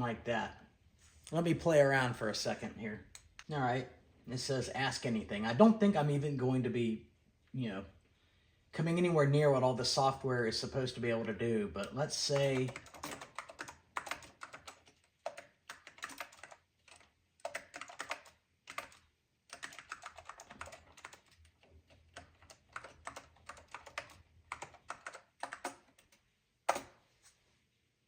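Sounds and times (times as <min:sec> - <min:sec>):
keyboard typing: 0:11.8 - 0:27.0.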